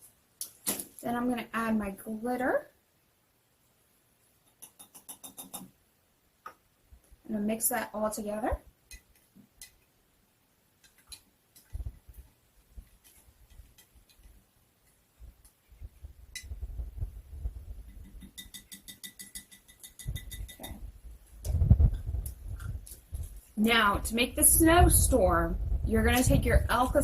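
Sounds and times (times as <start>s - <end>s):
spoon clinking against a jar: 18.2s - 20.8s.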